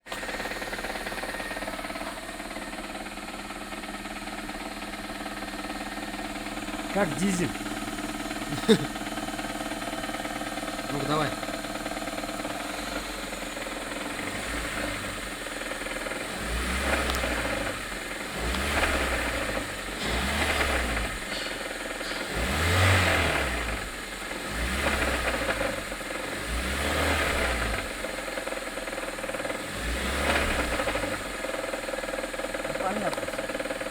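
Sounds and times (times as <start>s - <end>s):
engine knocking: 0.0s - 33.9s
car engine revving in short blips: 14.0s - 28.4s, 29.4s - 31.6s.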